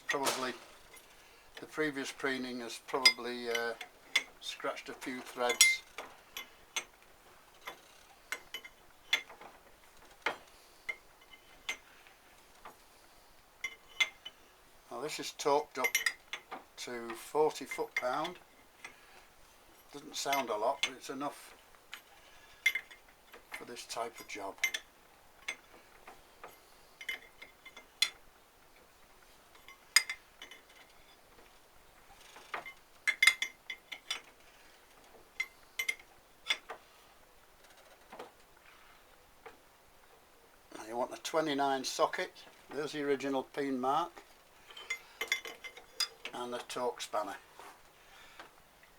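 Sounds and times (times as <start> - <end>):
metal tools clinking on workbench: 0.1 - 2.2, 2.9 - 6.9, 15.7 - 16.5, 44.6 - 46.8.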